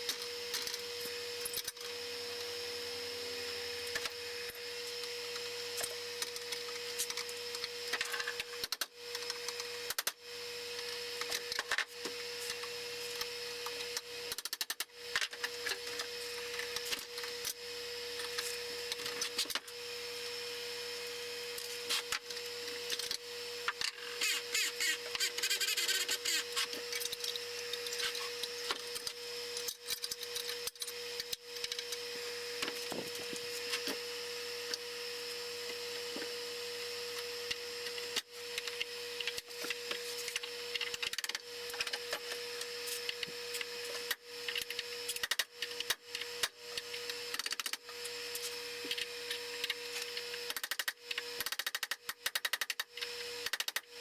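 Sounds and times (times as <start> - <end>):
steady background hum: 15.1 - 51.4
hand tools and metal parts clattering: 21.6 - 34.1.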